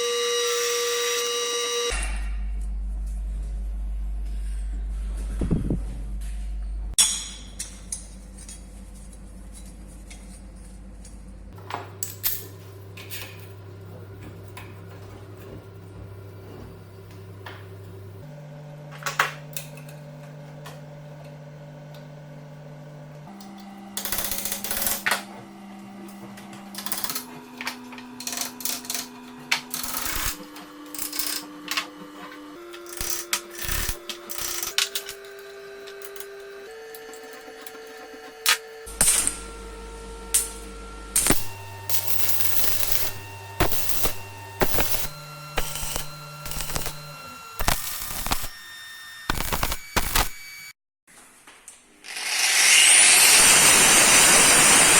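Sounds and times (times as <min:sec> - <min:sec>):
steady low tone: 0:02.0 - 0:07.0
metal parts clicking and knocking: 0:28.2 - 0:29.1, 0:32.8 - 0:35.2.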